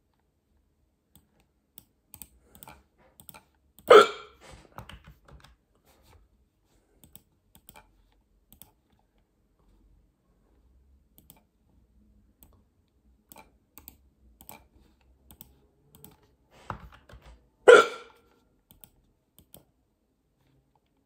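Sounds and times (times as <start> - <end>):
person hiccuping: 3.9 - 4.4, 17.7 - 18.2.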